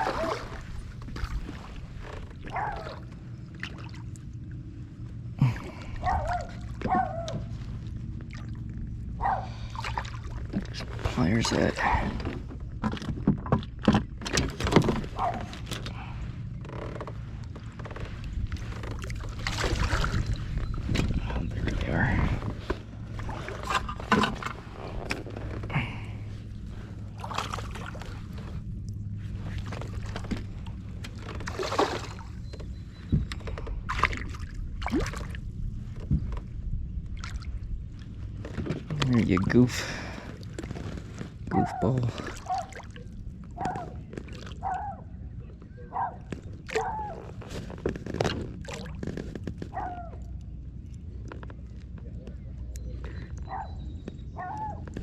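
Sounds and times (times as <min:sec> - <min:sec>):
low steady hum: 0:00.0 - 0:55.0
steady low rumble: 0:00.0 - 0:55.0
knocks and rustles: 0:12.1 - 0:16.0.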